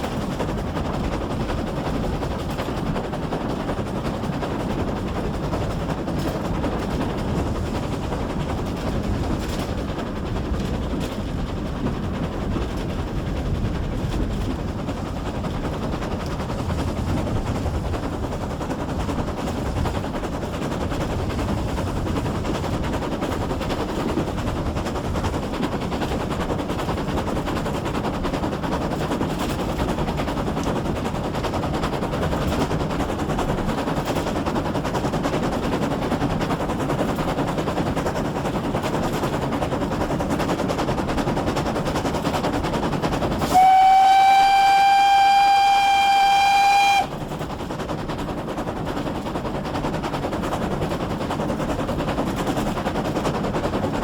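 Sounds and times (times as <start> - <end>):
steam locomotive rumble and clatter: 0.0 - 54.0
steam whistle: 43.4 - 47.2.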